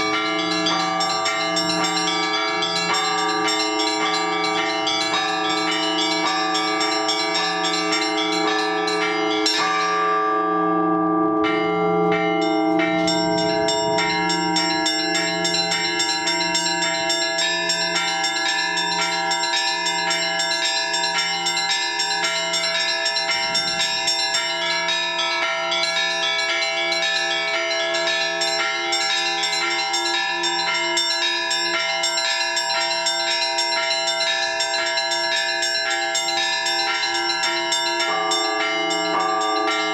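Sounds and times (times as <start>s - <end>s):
deep bell strokes: 0.0s - 39.9s
small high church bells: 0.0s - 39.9s.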